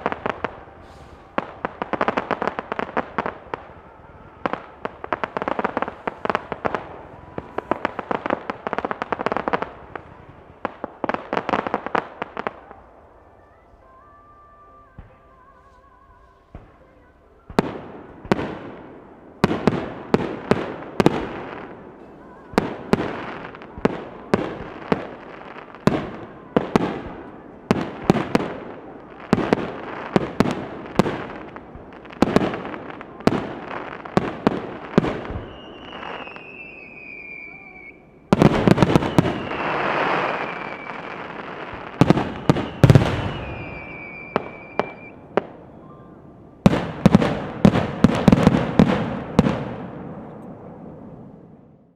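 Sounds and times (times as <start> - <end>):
firework crackling: 0.0 - 51.9
high falling whistle: 35.4 - 38.1, 42.3 - 46.2.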